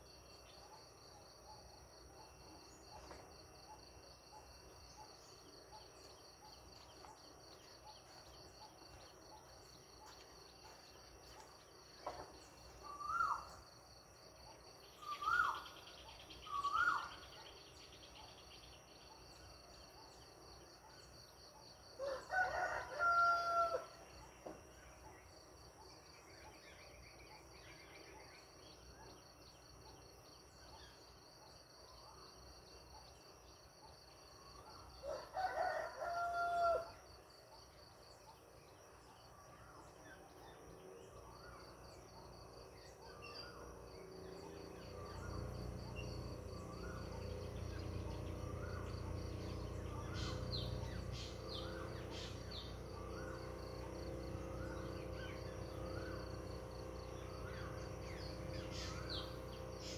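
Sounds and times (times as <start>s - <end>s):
insects chirring: 0.0s - 59.9s
birds calling: 5.1s - 13.7s, 14.8s - 18.9s, 42.8s - 59.9s
distant rooster crowing: 22.0s - 24.2s, 35.0s - 37.0s, 44.4s - 59.9s.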